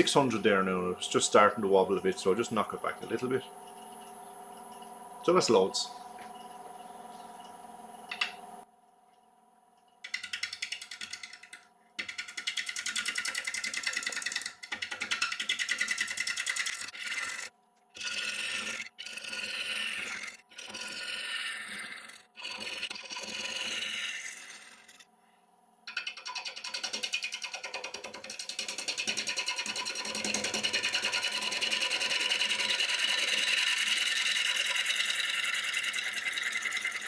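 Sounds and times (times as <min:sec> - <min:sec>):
gouge cutting wood on lathe: 0:12.0 - 0:25.0, 0:26.8 - 0:37.0.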